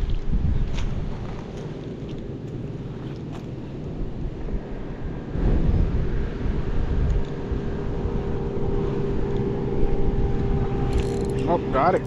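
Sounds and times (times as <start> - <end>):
wind buffeting microphone: 0.0 - 12.0
steady hum: 0.3 - 12.0.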